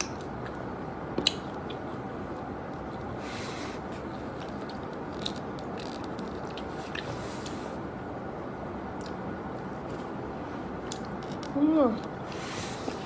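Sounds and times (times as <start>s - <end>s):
person chewing food: 0.0s - 7.7s.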